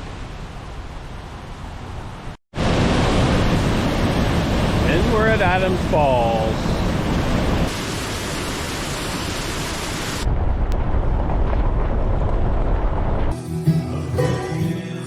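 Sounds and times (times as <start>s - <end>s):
waterfall roaring: 2.6s - 10.3s
music: 13.3s - 15.0s.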